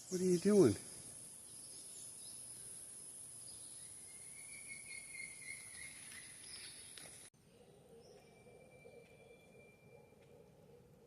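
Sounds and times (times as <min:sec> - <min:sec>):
insect drone: 0:00.0 - 0:11.0
thin drawn-out whistle: 0:07.9 - 0:10.2.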